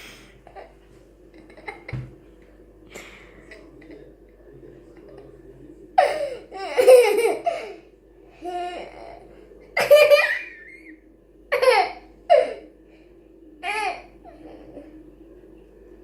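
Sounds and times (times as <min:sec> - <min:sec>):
young child laughing: 0:06.0 - 0:07.8.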